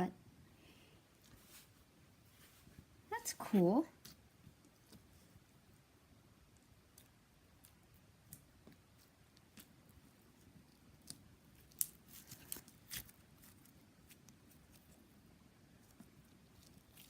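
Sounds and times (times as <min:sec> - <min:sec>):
sticky slime clicking and snapping: 0:06.8 - 0:09.8, 0:10.8 - 0:14.8.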